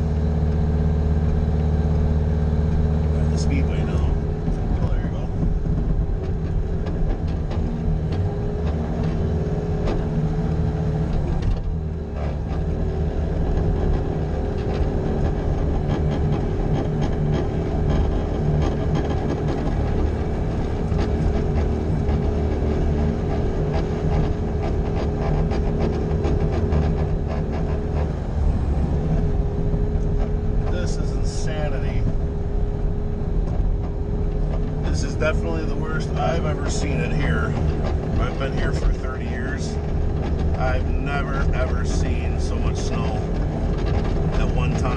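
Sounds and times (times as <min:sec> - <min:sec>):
loader engine droning: 0:00.0 - 0:44.9
clanks and rattles: 0:35.6 - 0:44.9.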